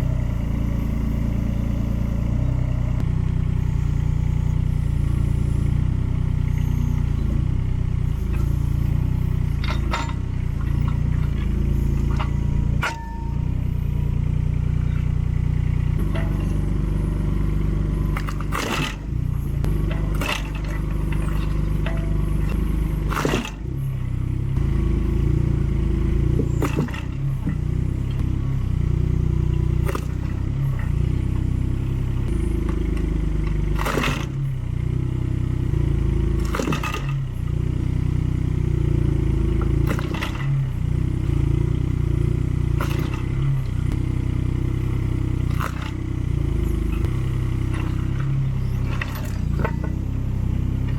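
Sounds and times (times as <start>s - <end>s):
excavator engine running: 0.0s - 50.9s
axe blade splitting logs: 8.2s - 24.2s, 26.2s - 35.1s, 35.7s - 37.7s, 39.3s - 41.8s, 42.4s - 50.9s.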